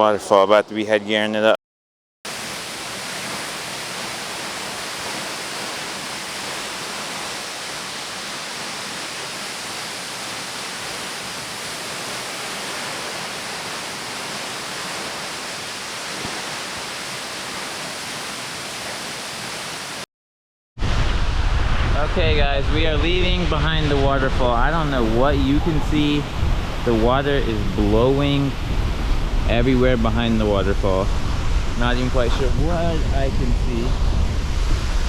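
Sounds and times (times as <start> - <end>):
waterfall rushing: 2.3 - 20.0.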